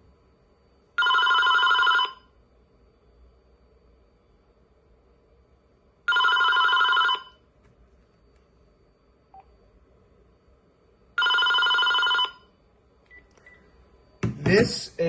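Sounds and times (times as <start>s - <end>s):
cordless phone ringing: 1.0s - 2.3s, 6.1s - 7.4s, 11.2s - 12.5s.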